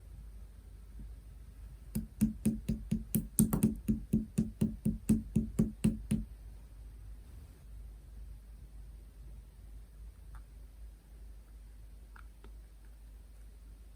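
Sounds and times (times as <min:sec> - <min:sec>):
fingertips tapping plastic container: 0:01.9 - 0:06.3.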